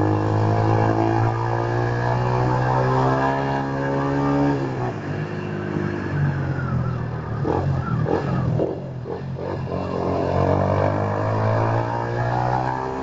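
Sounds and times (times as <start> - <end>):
motorcycle engine under throttle: 0.0 - 13.0.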